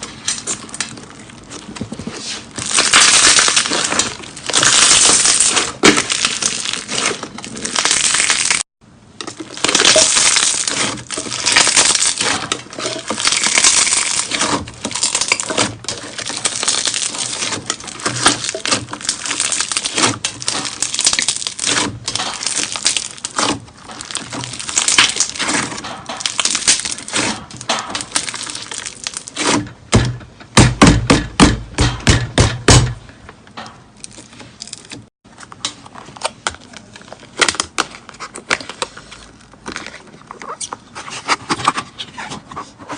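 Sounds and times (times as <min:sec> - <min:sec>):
slime squished crackling: 0:02.2 - 0:08.6, 0:09.3 - 0:29.6.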